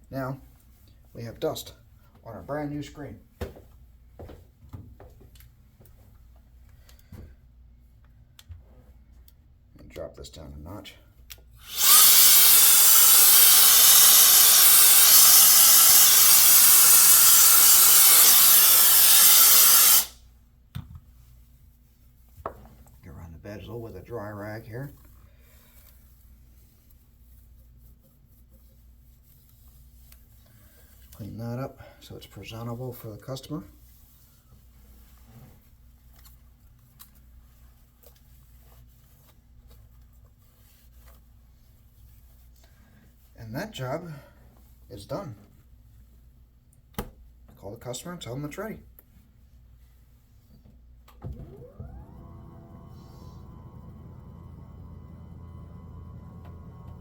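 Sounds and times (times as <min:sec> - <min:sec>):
compressed air hissing: 0:11.6 - 0:20.2.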